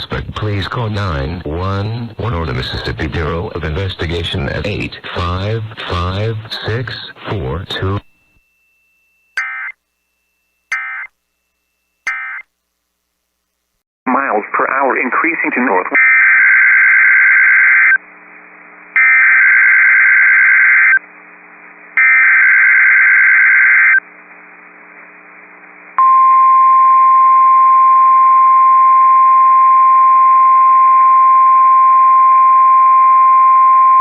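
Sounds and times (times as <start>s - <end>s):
steady alarm tone: 8.4s - 12.4s.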